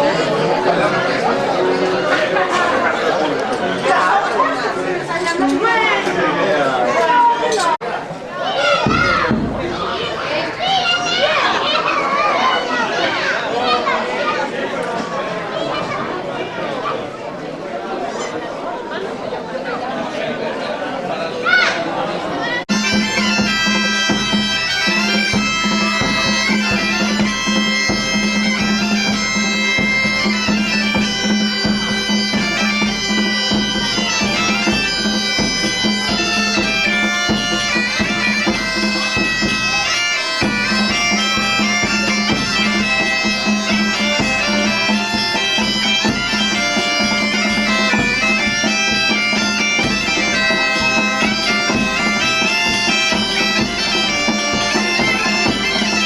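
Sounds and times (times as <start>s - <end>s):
drum beats: 8.6s - 11.2s, 22.7s - 56.0s
bagpipes playing over drone: 22.7s - 56.0s.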